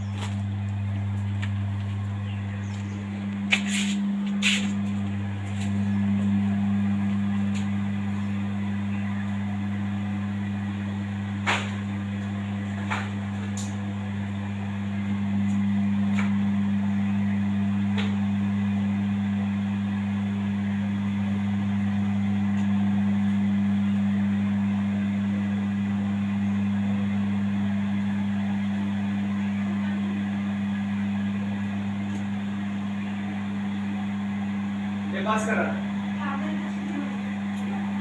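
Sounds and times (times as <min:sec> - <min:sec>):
machinery electric hum: 0:00.0 - 0:38.0.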